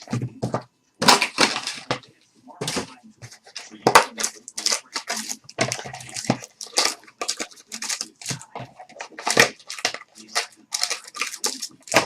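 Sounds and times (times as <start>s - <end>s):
plastic wrapping crinkling and tearing: 2.6s - 12.0s.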